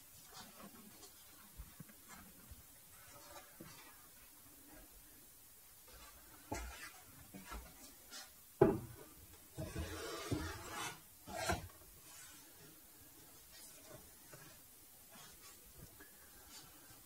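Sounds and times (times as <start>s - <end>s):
wood scraping against wood: 9.6s - 12.4s.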